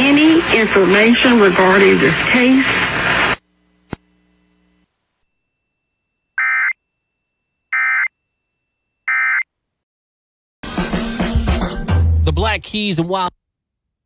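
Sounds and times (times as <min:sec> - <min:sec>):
faint hum: 0:00.0 - 0:08.6.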